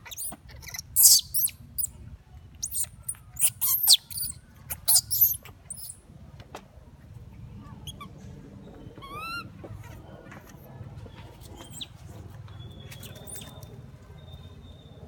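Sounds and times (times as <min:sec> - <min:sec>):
macaque squeaking: 0:00.0 - 0:01.9, 0:02.6 - 0:06.0, 0:07.8 - 0:08.2, 0:08.9 - 0:10.0, 0:11.4 - 0:12.0, 0:12.6 - 0:13.6.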